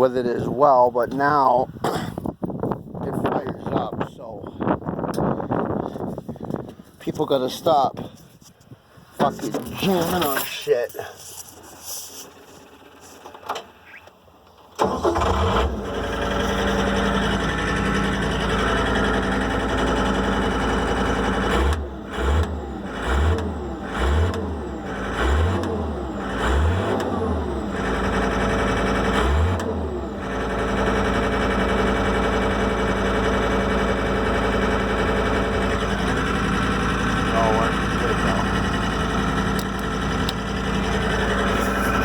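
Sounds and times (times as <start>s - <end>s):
diesel engine starting: 12.3s - 42.0s
diesel engine idling: 14.8s - 42.0s
diesel engine revving: 14.8s - 42.0s.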